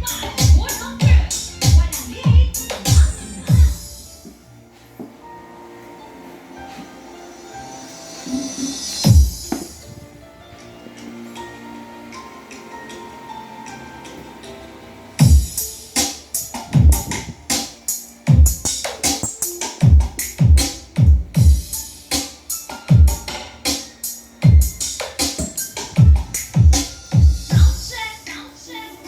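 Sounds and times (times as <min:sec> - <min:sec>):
electronic dance beat: 0:18.3 - 0:21.7, 0:24.4 - 0:27.9.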